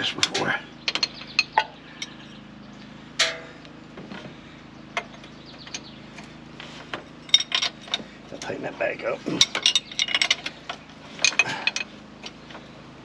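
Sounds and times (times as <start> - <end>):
steady low hum: 0.0 - 13.0
hand tools clicking on metal: 9.3 - 12.4.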